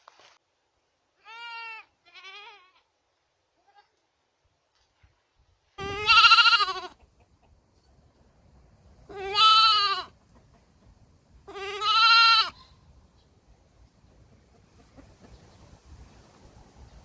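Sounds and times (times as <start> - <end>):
baby goat bleating: 1.2 - 2.9, 5.8 - 7.0, 9.1 - 10.1, 11.5 - 12.8.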